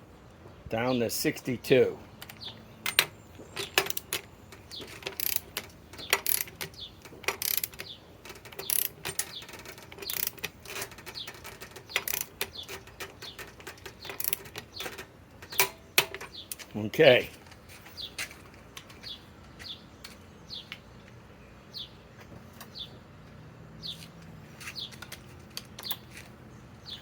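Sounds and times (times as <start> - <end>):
wrench ratchet clicking: 3.6 - 16.2.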